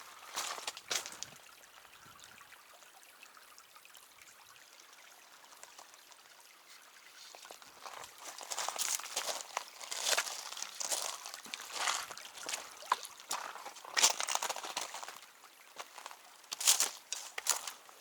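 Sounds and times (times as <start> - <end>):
footsteps crunching on trail: 0.2 - 1.4, 7.3 - 15.2, 15.8 - 18.0.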